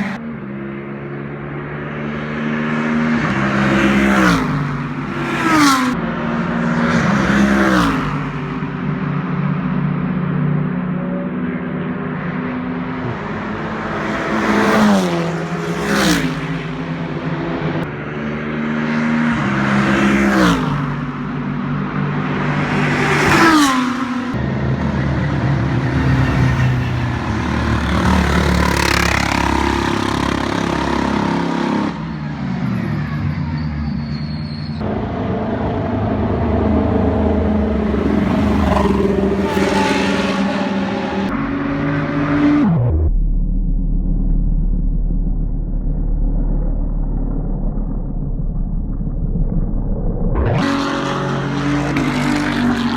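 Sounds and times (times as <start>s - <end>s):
race cars passing at speed: 0.0s - 42.9s, 50.3s - 52.9s.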